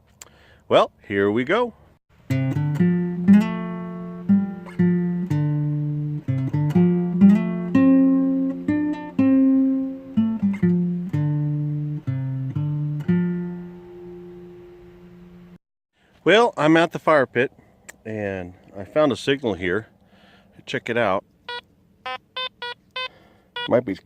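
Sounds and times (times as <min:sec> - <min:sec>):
acoustic guitar playing: 0:02.2 - 0:15.6.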